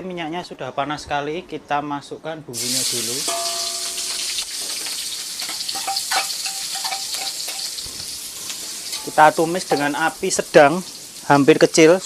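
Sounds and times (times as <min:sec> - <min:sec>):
food sizzling in hot oil: 0:02.6 - 0:12.0.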